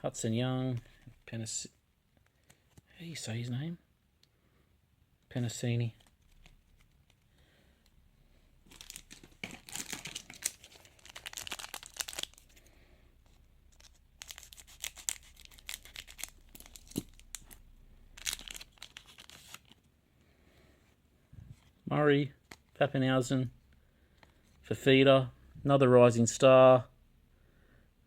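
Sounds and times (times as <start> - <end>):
card packet wrapper tearing: 8.7 - 12.5, 13.7 - 17.6, 18.2 - 19.8.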